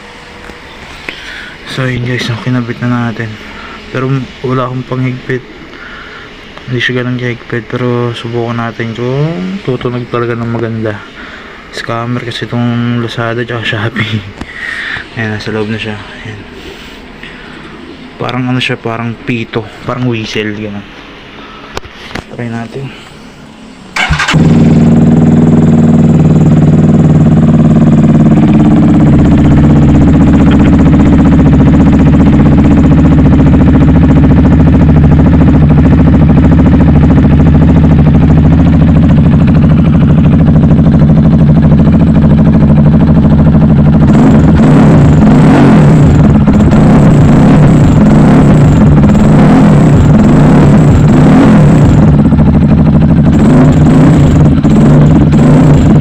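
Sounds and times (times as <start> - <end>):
motorcycle engine revving: 23.9 - 56.0.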